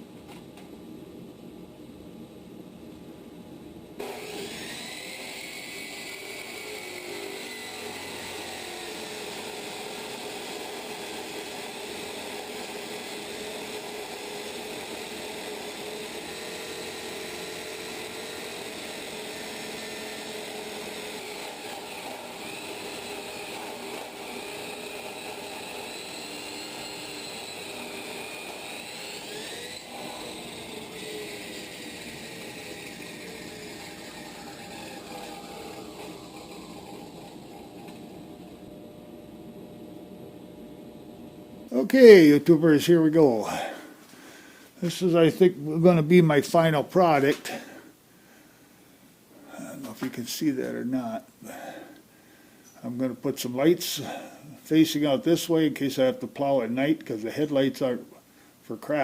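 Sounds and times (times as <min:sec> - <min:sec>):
power tool whining: 0:04.0 - 0:42.2.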